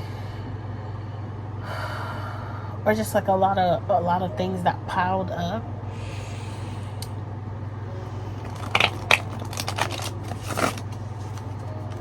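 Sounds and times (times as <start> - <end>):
steady low hum: 0.0 - 12.0
cards being shuffled: 8.0 - 12.0.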